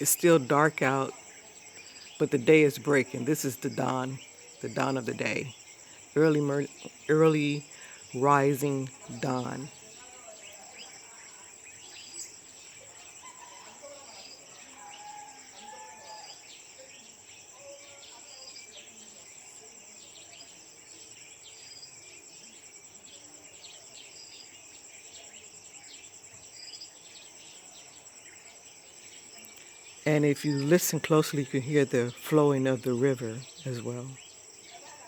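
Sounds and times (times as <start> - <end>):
distant men talking: 0.0 - 5.6
high-pitched insect trill: 0.0 - 35.0.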